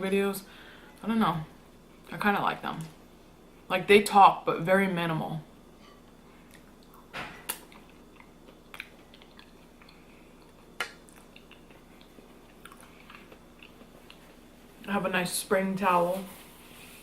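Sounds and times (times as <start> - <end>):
person chewing food: 6.0 - 14.6.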